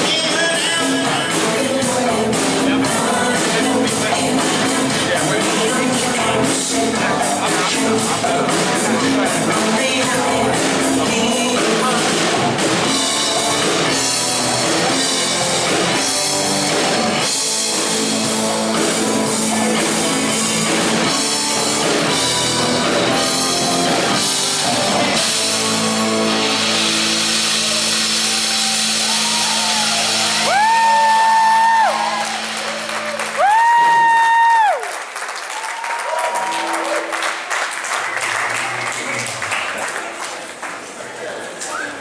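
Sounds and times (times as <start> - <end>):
person singing: 0.0 - 32.9
live pop-rock band: 0.0 - 39.4.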